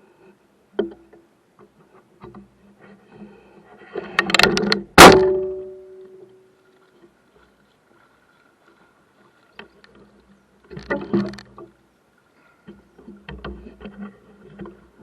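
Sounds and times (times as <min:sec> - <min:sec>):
knocks and clattering on a boat: 0:00.7 - 0:03.3, 0:04.0 - 0:07.2, 0:09.3 - 0:11.8, 0:12.6 - 0:15.0
loud metallic clang ringing: 0:05.0 - 0:06.3.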